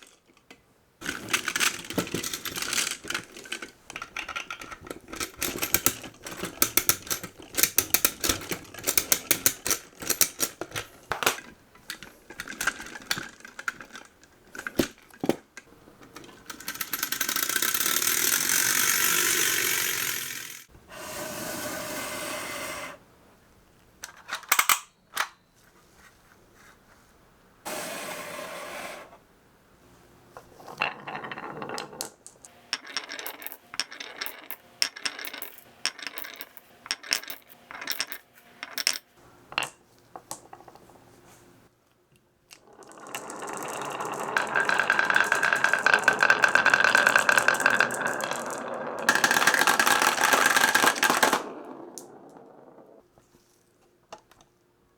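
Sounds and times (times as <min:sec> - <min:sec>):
marbles clacking: 0:16.4 - 0:20.7, 0:30.7 - 0:39.0, 0:42.7 - 0:53.0
glass marbles rolling on wood: 0:30.5 - 0:39.0, 0:42.6 - 0:53.0.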